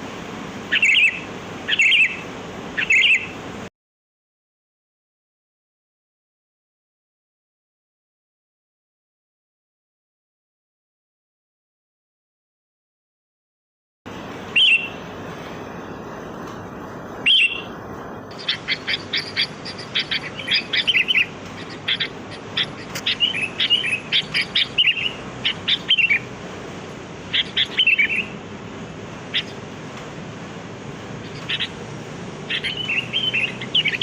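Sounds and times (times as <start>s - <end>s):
bulbul calling and chirping: 0.7s - 3.4s, 14.5s - 15.0s, 17.2s - 17.7s, 18.3s - 26.3s, 27.3s - 28.4s, 29.3s - 29.7s, 31.2s - 34.0s.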